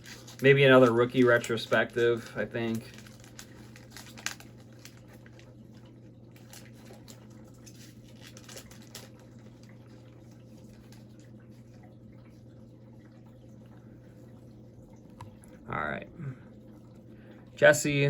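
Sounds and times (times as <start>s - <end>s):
trading cards ticking and rustling: 0.0s - 5.5s, 6.3s - 9.8s
steady low hum: 0.0s - 18.0s.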